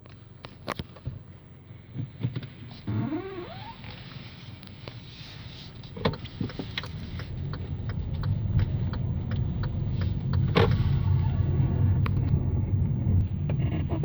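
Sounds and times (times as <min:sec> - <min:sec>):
low vehicle rumble: 0:00.2 - 0:14.0
suspension creaking and clicking: 0:05.8 - 0:14.0.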